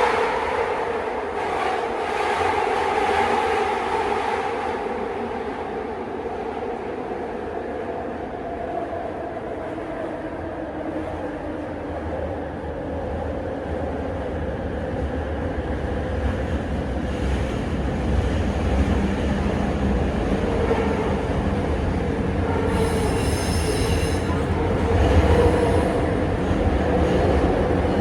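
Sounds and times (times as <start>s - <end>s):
metro train rumbling: 0.0s - 28.0s
high-pitched wheel squeal: 22.7s - 24.5s.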